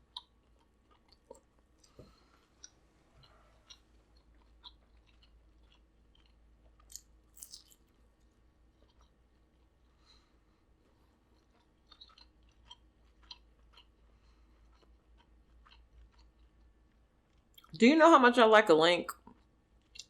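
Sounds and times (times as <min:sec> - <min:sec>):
quiet chewing: 0:00.0 - 0:17.8, 0:19.1 - 0:20.0
mouth clicks and smacks: 0:02.6 - 0:07.8.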